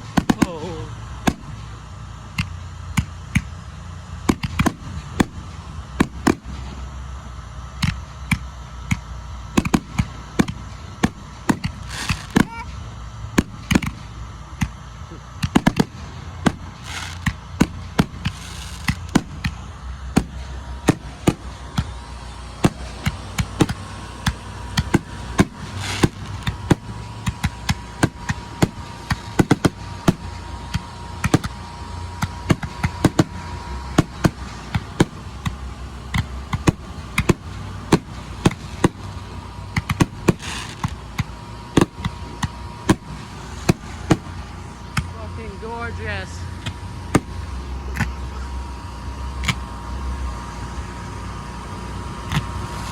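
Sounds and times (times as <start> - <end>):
low steady rumble: 0.0 - 52.9
fireworks bangs: 9.6 - 14.1, 15.4 - 48.2.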